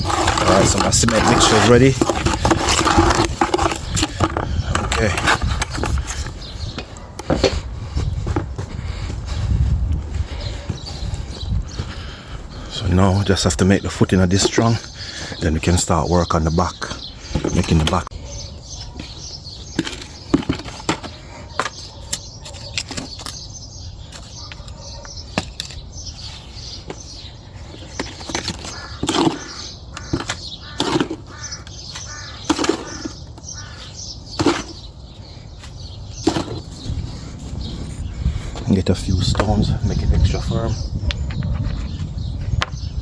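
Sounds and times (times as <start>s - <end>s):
hand tool scraping wet cement: 0.0s - 6.3s, 27.7s - 31.8s, 32.4s - 33.3s, 34.3s - 34.9s.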